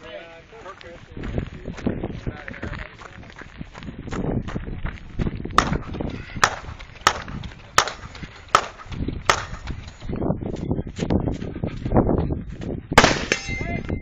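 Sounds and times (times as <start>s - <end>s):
gunshots: 5.6s - 9.7s, 13.0s - 13.6s.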